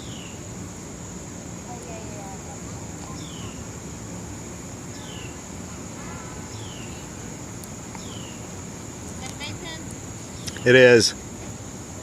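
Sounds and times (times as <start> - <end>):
high-pitched insect drone: 0.0 - 12.0.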